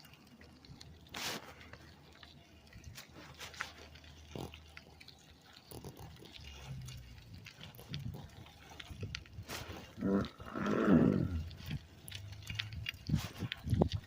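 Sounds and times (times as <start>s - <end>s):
short animal sounds: 9.8s - 11.8s.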